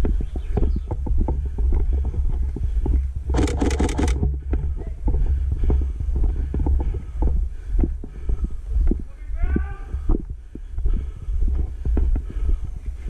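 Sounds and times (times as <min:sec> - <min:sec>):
wind rumble on camera: 0:00.0 - 0:03.4, 0:04.1 - 0:13.0
rapid sharp clicks: 0:03.3 - 0:04.3.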